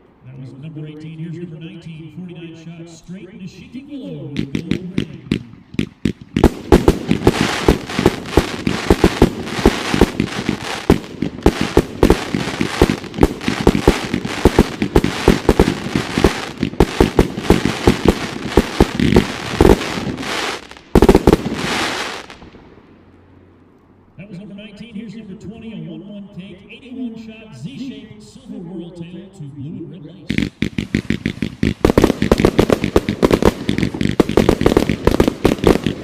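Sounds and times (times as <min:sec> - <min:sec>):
firework launches and bursts: 0:05.0 - 0:22.6, 0:30.3 - 0:36.0
firework hiss: 0:05.8 - 0:22.5, 0:30.3 - 0:36.0.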